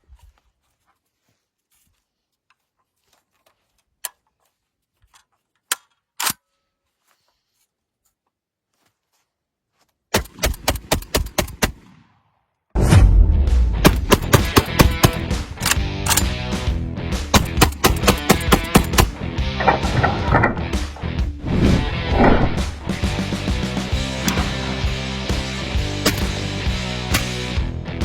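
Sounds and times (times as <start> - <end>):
loud music: 13.4 - 28.0
shotgun rapid firing: 13.8 - 15.3, 17.3 - 19.2, 25.9 - 26.5.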